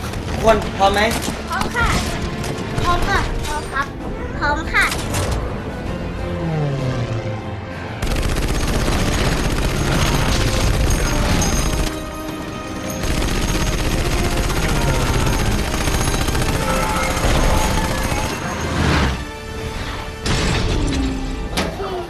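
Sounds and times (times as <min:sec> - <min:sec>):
background music: 0:00.0 - 0:22.0
rapid gunfire: 0:08.0 - 0:19.2.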